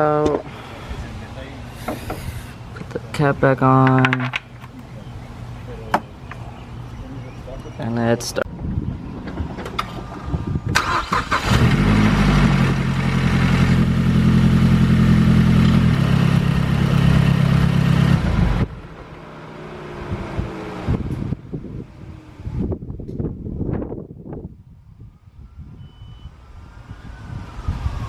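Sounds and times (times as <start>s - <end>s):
car engine cranking and starting: 10.7s - 14.2s.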